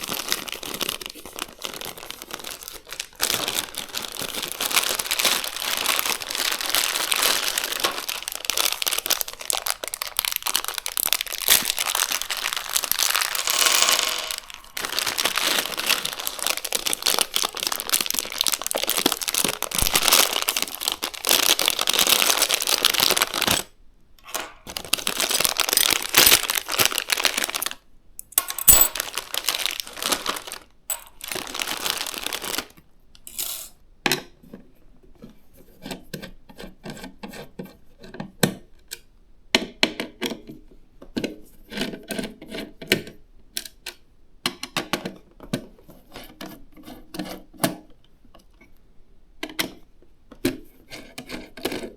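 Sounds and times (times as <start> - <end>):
plastic packaging crinkling: 0.0 - 23.7, 24.3 - 27.8, 28.5 - 32.8.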